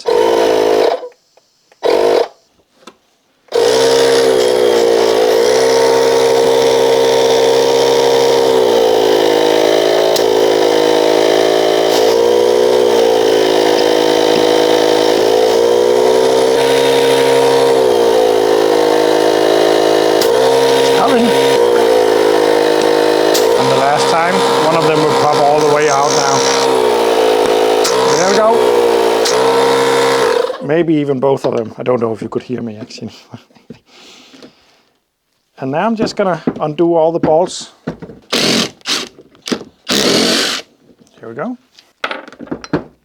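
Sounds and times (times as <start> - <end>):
small air compressor running: 0.0 - 2.5, 3.5 - 30.7, 38.3 - 40.7.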